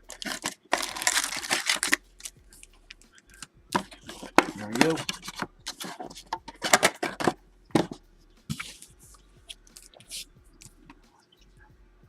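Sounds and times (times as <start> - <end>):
card packs crinkling and rustling: 0.0 - 2.0, 3.8 - 8.8.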